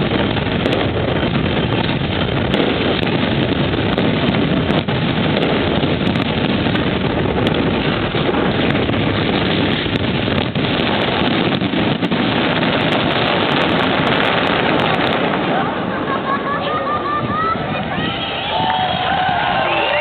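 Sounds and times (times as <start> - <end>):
fireworks rumble: 0.0 - 20.0
sharp firework cracks: 0.0 - 20.0.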